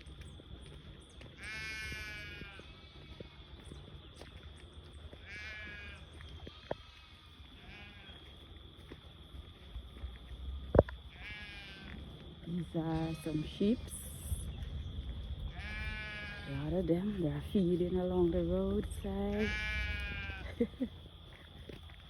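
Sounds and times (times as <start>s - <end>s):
sheep bleating: 1.4s - 3.2s, 5.2s - 8.3s, 11.1s - 12.0s, 12.9s - 14.3s, 15.5s - 17.2s, 18.9s - 20.7s.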